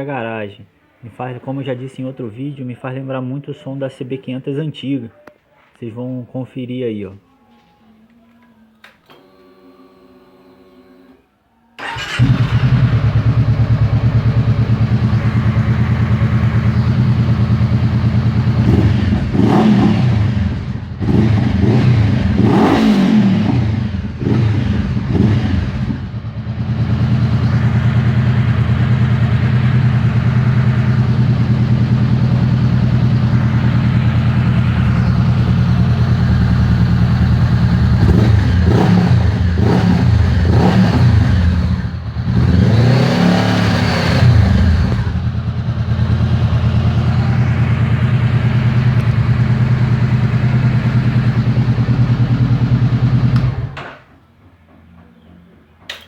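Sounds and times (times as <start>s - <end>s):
motorcycle engine idling and revving: 11.8s - 53.8s.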